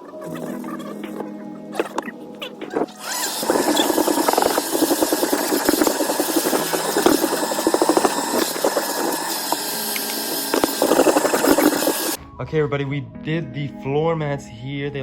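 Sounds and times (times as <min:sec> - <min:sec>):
motorised cleaning tool rattling: 0:03.0 - 0:12.2.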